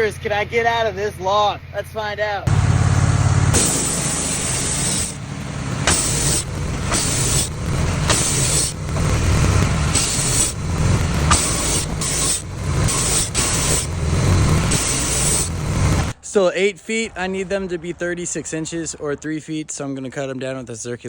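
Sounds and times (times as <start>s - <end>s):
sawmill motor droning: 2.5s - 16.2s
band blade hissing through log: 3.6s - 9.1s, 9.8s - 16.1s.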